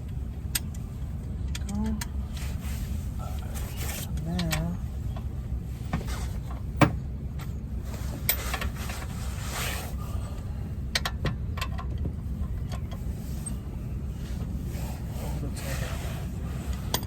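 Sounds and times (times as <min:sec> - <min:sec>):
steady low rumble: 0:00.0 - 0:17.0
tools clicking and knocking: 0:10.9 - 0:13.0.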